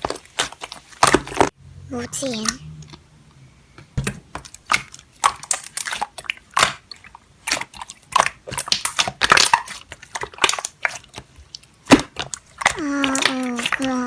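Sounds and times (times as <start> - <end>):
slime crackling and popping: 0.0 - 1.5, 4.3 - 14.0.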